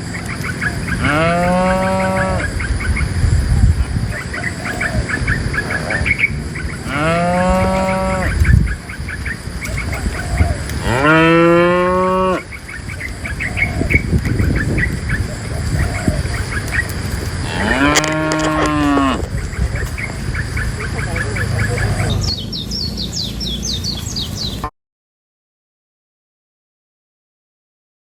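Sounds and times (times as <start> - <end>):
cattle mooing: 0.9 - 2.6, 6.8 - 8.4, 10.8 - 12.5, 17.3 - 19.3.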